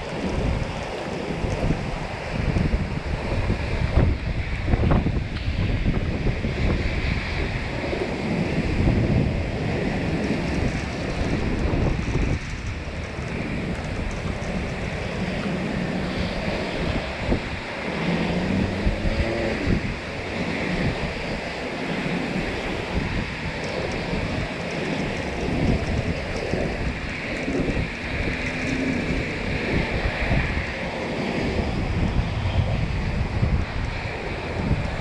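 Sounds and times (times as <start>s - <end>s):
wind buffeting microphone: 0.0s - 35.0s.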